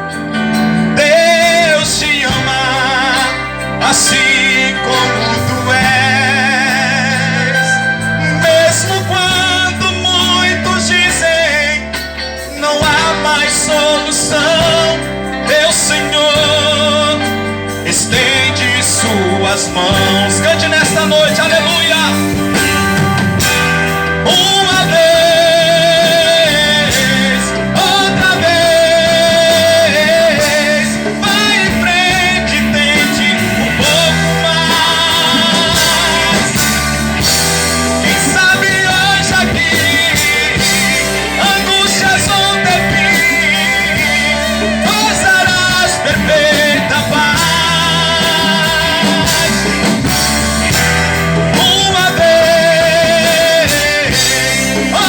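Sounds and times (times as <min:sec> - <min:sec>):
live band playing: 0:00.0 - 0:55.0
people singing: 0:00.0 - 0:55.0.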